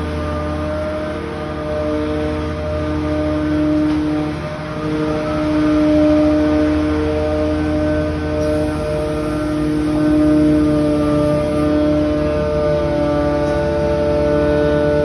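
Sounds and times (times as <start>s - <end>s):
truck engine rumbling: 0.0s - 15.0s
truck horn blaring tones: 4.8s - 15.0s.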